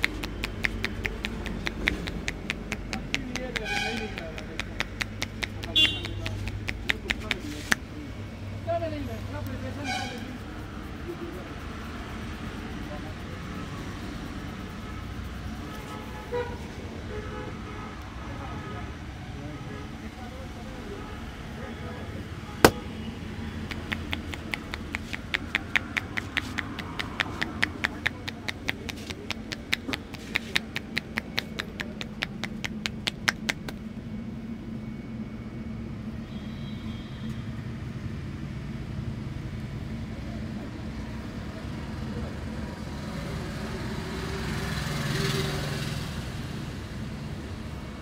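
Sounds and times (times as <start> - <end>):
rapid hand slaps on a head: 0.0 - 7.9, 23.7 - 33.8.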